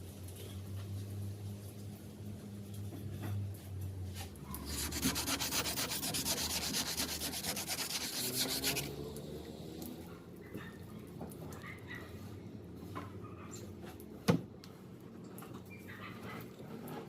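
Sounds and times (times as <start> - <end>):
rapid rasping scrape: 4.5 - 9.0.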